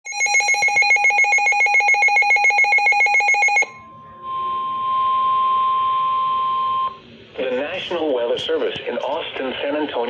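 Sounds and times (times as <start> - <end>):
pulsing electronic alarm: 0.1 - 7.0.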